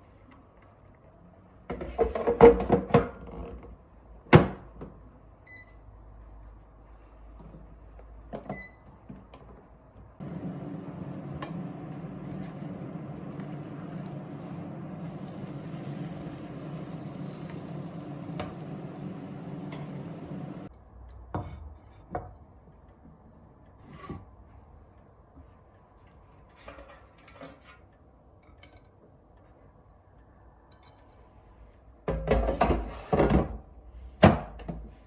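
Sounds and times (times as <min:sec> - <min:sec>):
microwave oven humming: 0:10.2 - 0:20.7.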